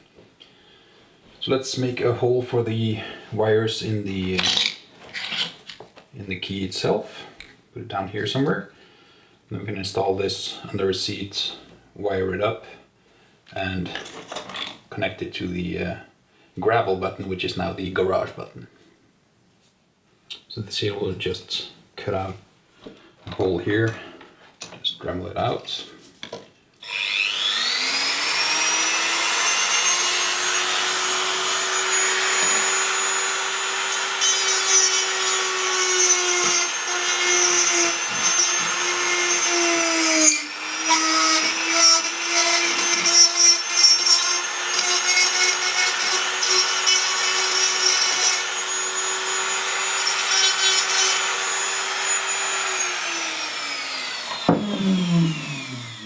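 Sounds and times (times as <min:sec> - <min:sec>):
rotary tool whining: 0:26.8 - 0:56.0.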